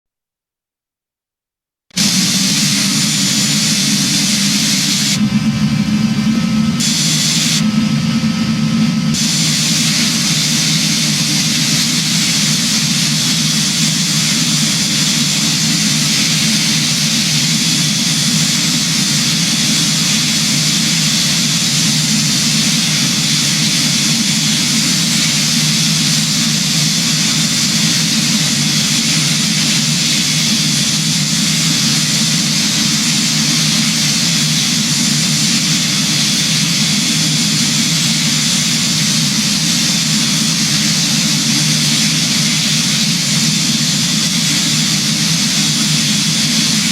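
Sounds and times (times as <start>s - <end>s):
aircraft engine drone: 1.9s - 46.9s
rushing air: 2.0s - 31.3s.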